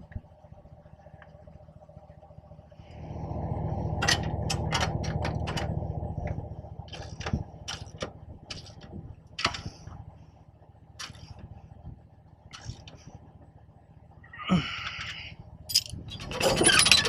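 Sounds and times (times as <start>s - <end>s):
steady low hum: 0.0s - 17.0s
metal tools clicking and clanking: 6.9s - 9.7s, 14.8s - 17.0s.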